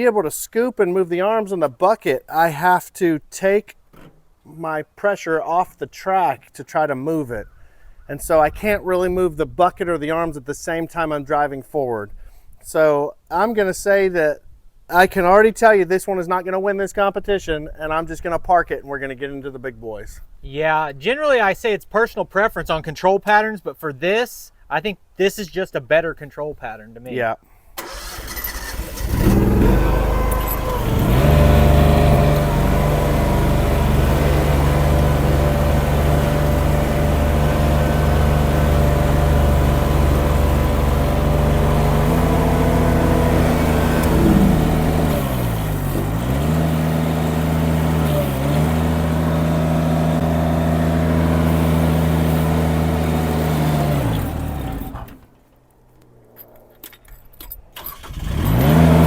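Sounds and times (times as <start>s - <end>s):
engine running at high speed: 28.9s - 55.2s, 58.2s - 59.0s.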